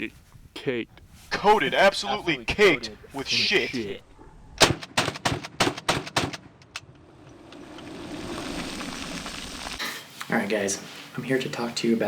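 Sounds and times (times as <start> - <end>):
rapid rifle shots: 4.6 - 6.6.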